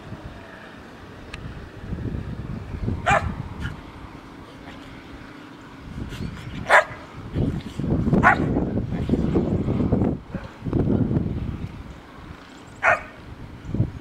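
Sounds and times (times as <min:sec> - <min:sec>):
low rumbling noise: 0:00.0 - 0:14.0
dog barking: 0:03.0 - 0:03.3, 0:06.7 - 0:07.0, 0:08.2 - 0:08.5, 0:12.8 - 0:13.2.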